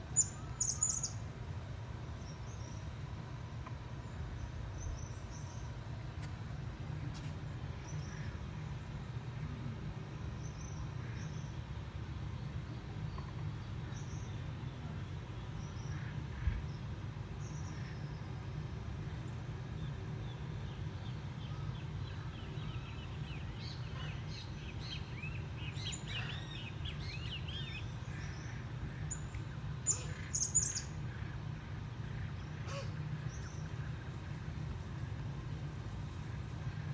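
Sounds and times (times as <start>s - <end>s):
steady low hum: 0.0s - 36.9s
birds chirping: 0.1s - 1.2s, 29.1s - 30.9s.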